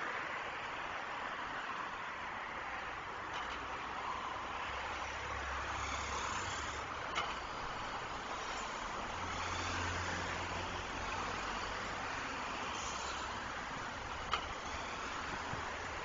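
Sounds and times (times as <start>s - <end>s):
passing vehicle engines drone: 0.1s - 16.0s
tyre hiss: 12.5s - 16.0s.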